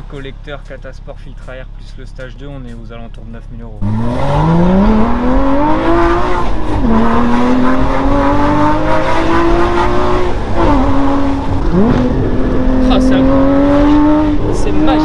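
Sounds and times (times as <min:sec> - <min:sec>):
car engine accelerating with upshifts: 0:03.7 - 0:15.0.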